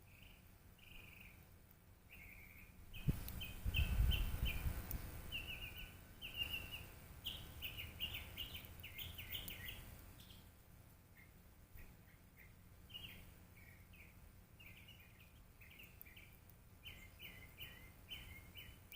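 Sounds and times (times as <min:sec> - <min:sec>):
songbirds chirping: 0:00.0 - 0:18.9.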